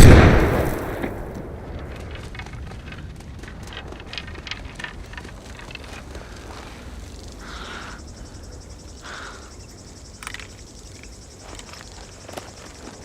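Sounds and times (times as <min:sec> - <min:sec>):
insects chirring: 0:00.0 - 0:13.0.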